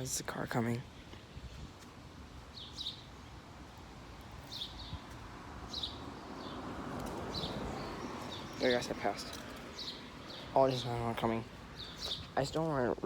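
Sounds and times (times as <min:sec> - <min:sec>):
car approaching on road: 0:04.8 - 0:12.5.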